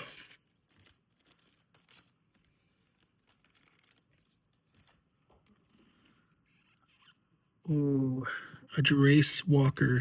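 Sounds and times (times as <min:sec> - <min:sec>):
card pack wrappers crinkling: 0:00.3 - 0:05.7.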